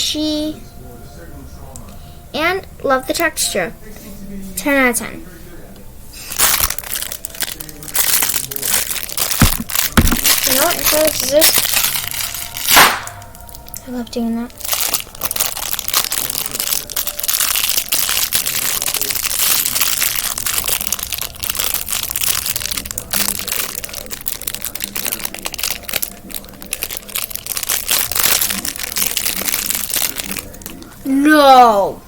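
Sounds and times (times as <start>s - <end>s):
packaging torn and crumpled: 6.3s - 13.9s, 14.5s - 30.9s.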